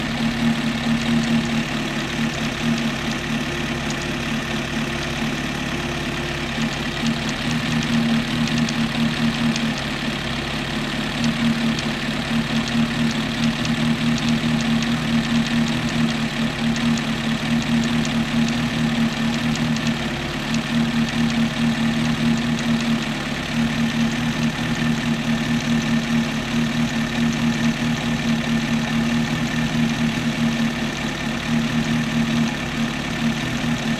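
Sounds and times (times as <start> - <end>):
motorcycle engine idling: 0.0 - 33.9
fast light ticking: 6.6 - 9.8, 11.2 - 23.0.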